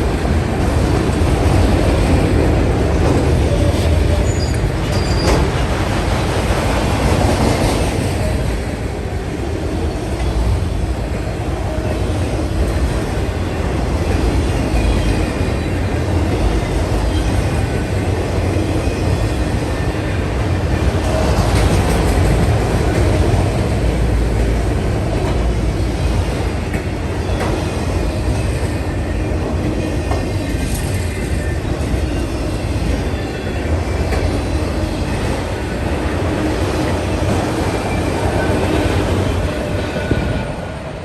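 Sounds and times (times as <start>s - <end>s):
train wheels rumbling on rail: 0.0s - 41.0s.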